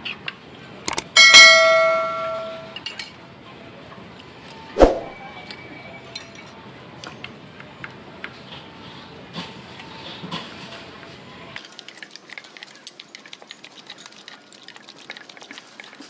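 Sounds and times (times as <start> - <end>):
ringing metal strike: 1.2 - 2.8
kitchen utensils clinking: 1.2 - 3.1.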